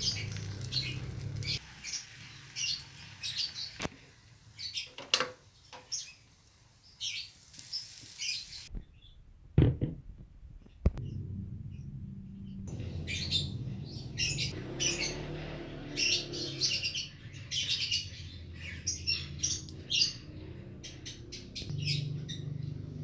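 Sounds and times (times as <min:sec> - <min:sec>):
small bird chirping: 0:00.0 - 0:03.9, 0:11.0 - 0:23.0
sharp knocks and clatters: 0:08.7 - 0:11.6.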